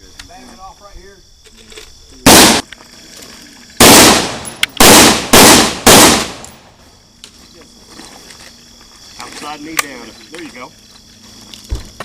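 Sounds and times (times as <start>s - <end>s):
rifle shots: 2.3s - 2.6s, 3.8s - 6.7s.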